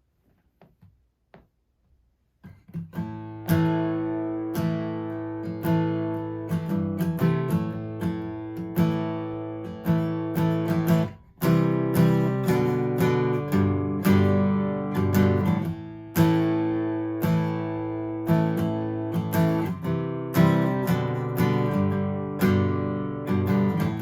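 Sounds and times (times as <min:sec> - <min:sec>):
faint taps: 0:00.2 - 0:01.6
acoustic guitar strumming: 0:02.5 - 0:24.0.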